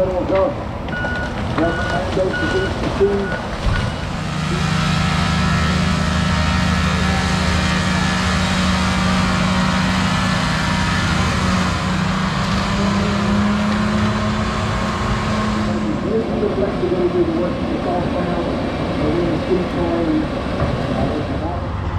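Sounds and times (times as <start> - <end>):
large diesel engine running: 0.0 - 21.9.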